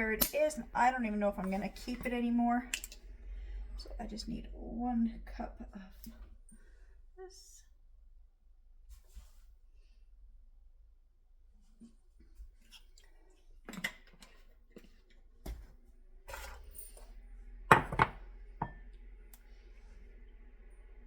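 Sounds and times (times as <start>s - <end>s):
dishes knocking and clinking: 17.7s - 18.8s.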